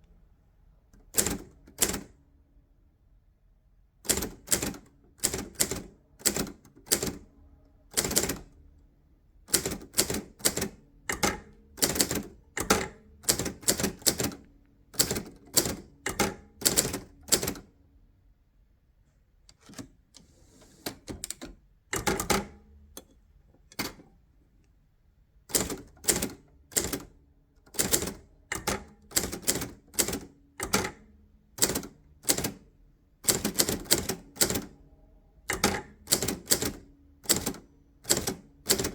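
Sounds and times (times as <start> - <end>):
manual typewriter clacking: 4.1 - 7.2, 9.5 - 14.4, 15.0 - 17.7, 19.5 - 22.6, 25.5 - 27.1, 27.7 - 31.0, 31.6 - 32.6, 33.3 - 34.7, 35.5 - 38.9.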